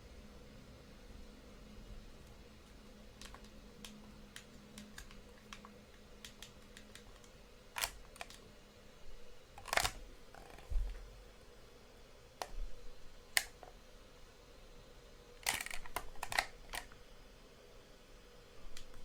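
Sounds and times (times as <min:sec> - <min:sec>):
faint electrical hum: 0:00.0 - 0:19.0
small buttons clicking: 0:03.2 - 0:08.4.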